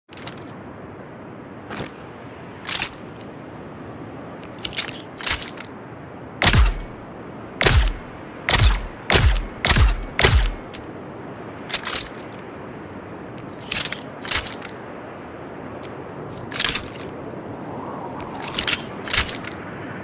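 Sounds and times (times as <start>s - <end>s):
dart gun shots: 6.4s - 6.9s, 7.6s - 10.8s.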